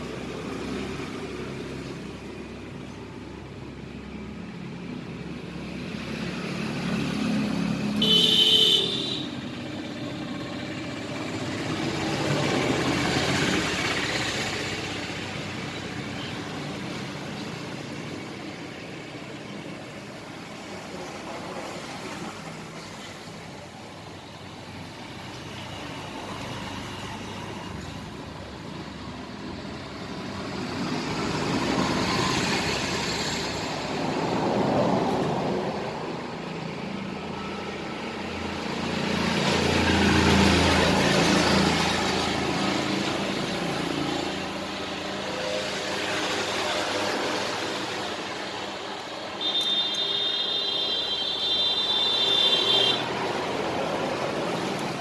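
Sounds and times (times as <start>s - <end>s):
passing road traffic: 0.0s - 55.0s.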